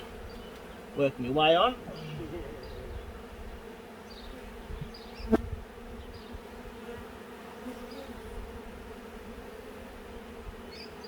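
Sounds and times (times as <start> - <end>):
honeybees buzzing: 0.0 - 11.0.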